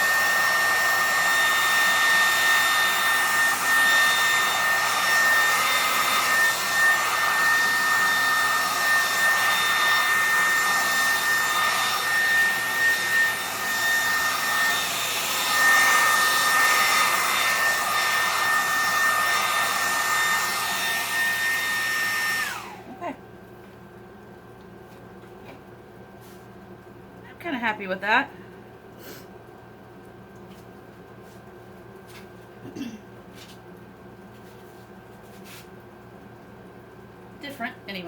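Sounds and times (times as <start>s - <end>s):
hairdryer blowing with motor whine: 0.0s - 23.2s.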